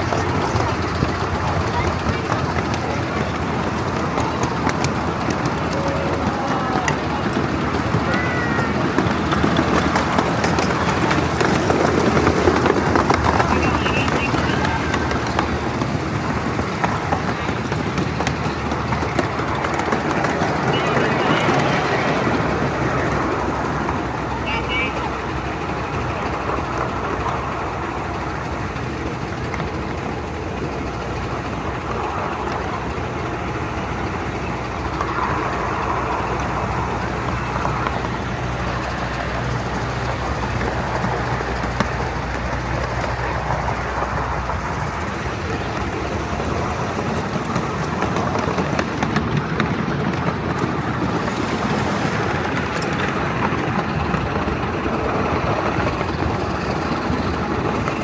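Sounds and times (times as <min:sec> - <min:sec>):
miniature train rumble and rail noise: 0:00.0 - 0:58.0.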